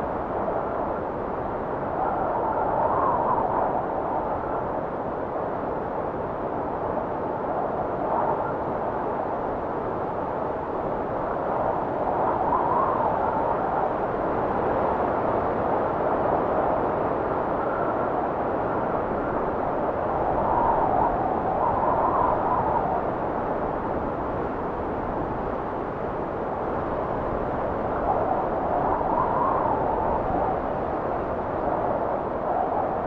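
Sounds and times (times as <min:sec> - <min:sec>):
faint wind whistle: 0:17.5 - 0:25.4, 0:26.8 - 0:33.0
wind blowing: 0:18.6 - 0:33.0.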